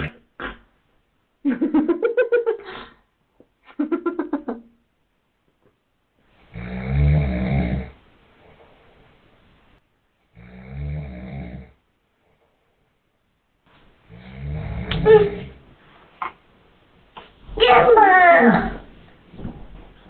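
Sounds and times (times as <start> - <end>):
faint breathing: 2.6 - 3.1
man snoring: 6.5 - 8.0, 10.4 - 11.8, 14.1 - 14.9.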